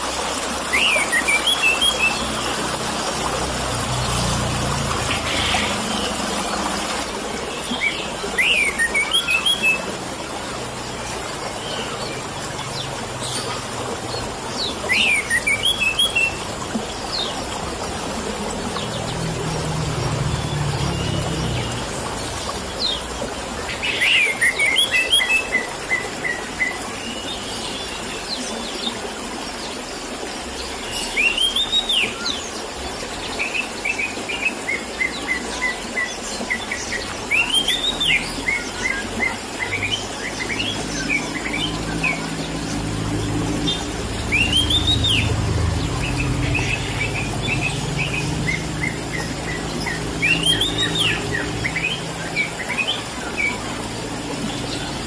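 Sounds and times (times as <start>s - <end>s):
trickling water: 0.0s - 55.0s.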